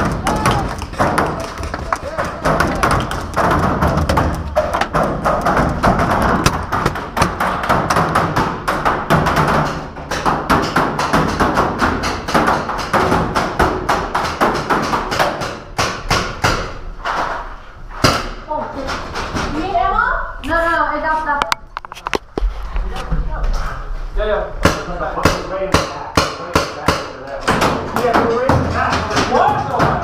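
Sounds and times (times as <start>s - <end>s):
paintballs striking wood: 0.0s - 17.3s.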